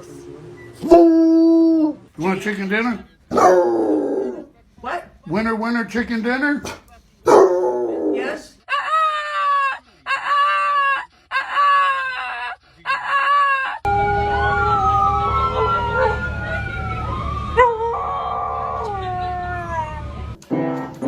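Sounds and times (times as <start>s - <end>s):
dog howling: 0.8s - 2.0s, 3.3s - 4.5s, 7.3s - 8.4s, 11.6s - 20.2s
rising and falling howl-like tones: 13.9s - 20.4s.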